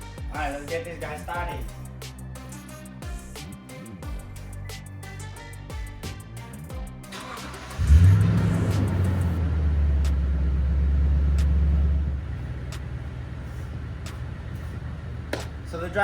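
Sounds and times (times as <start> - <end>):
truck engine starting and idling: 6.2 - 16.0.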